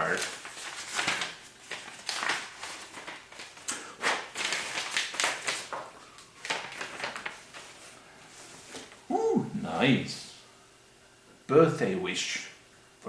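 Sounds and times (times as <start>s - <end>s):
paper rustling: 0.0s - 9.0s.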